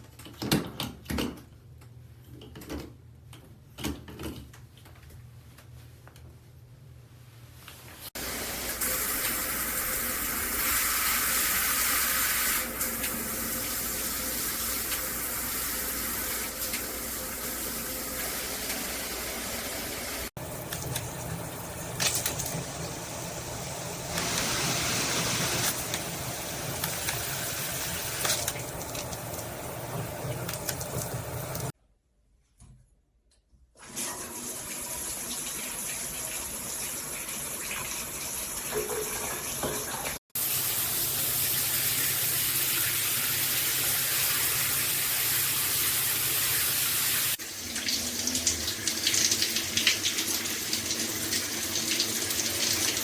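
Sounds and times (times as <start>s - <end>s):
shower head spraying water: 8.1s - 31.8s.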